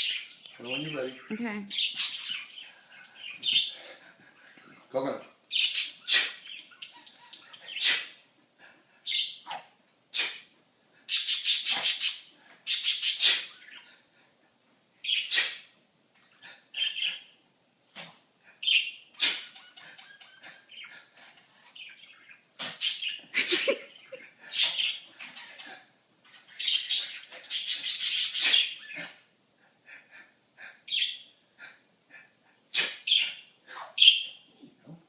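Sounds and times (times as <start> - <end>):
bird sneezing: 6.0 - 6.5, 7.7 - 8.2, 9.4 - 10.5, 13.0 - 13.5, 15.2 - 15.6, 19.2 - 19.5, 28.2 - 29.2, 32.7 - 34.0.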